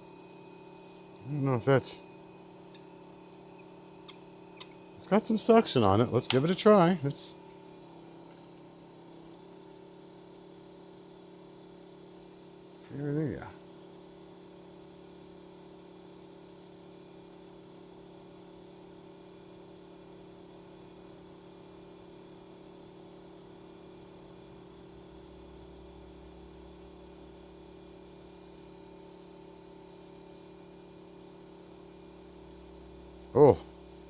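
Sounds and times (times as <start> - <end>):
hot air blower hum and whine: 0.0 - 15.0, 24.0 - 34.0.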